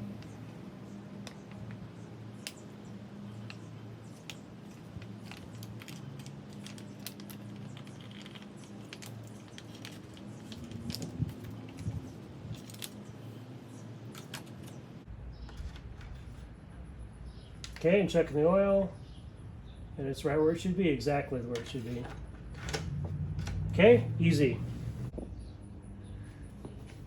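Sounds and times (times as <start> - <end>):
steady low hum: 6.8 - 27.0.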